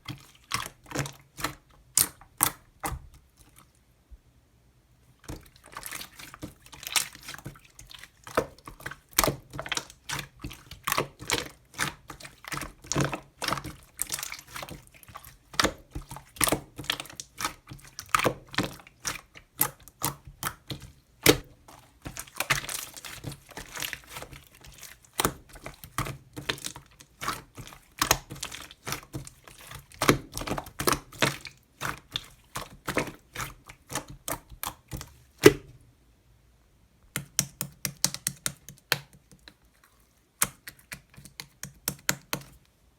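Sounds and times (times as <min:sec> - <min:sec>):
slime crack: 0:00.1 - 0:03.1, 0:05.3 - 0:35.8
slime clicking and popping: 0:37.2 - 0:39.2.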